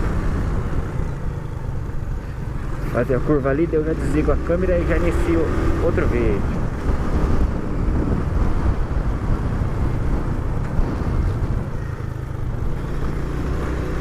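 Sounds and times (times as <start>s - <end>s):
motorcycle engine running: 0.0s - 14.0s
wind noise on microphone: 6.2s - 14.0s.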